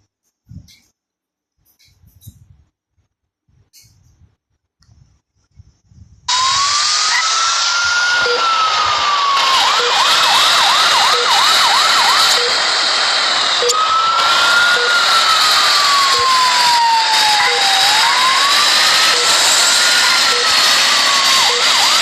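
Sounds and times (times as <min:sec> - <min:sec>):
click: 0:01.7 - 0:02.4, 0:04.8 - 0:05.0
ambulance siren wailing: 0:06.3 - 0:22.0.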